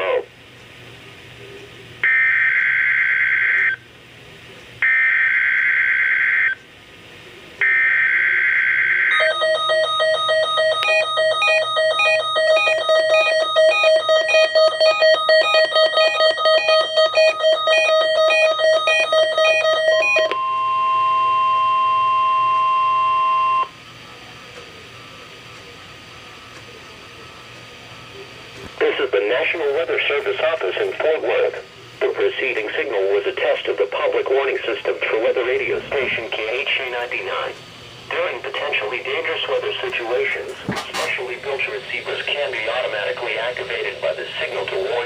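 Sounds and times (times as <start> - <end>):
rapidly pulsing alarm beep: 2.0 - 3.8, 7.6 - 23.8
steady single alarm tone: 7.6 - 23.8
warbling digital data tones: 7.7 - 23.7.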